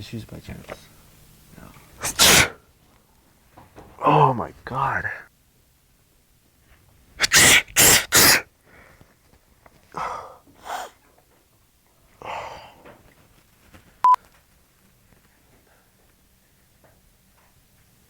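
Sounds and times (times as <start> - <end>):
man sneezing loudly: 2.0 - 2.6, 7.2 - 8.5, 10.6 - 11.0.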